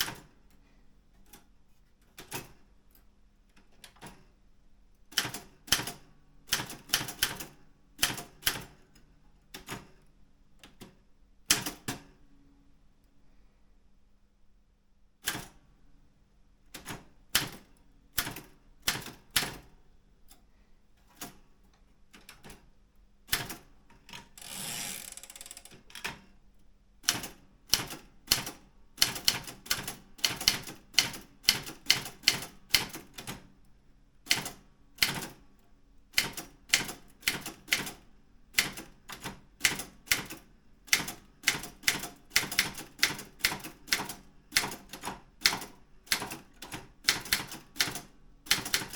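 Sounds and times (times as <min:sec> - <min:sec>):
typewriter carriage sliding: 0:24.2 - 0:26.1.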